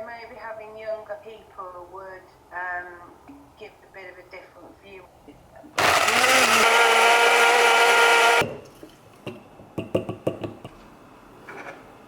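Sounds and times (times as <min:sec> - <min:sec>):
small appliance motor spinning: 0:05.8 - 0:08.4.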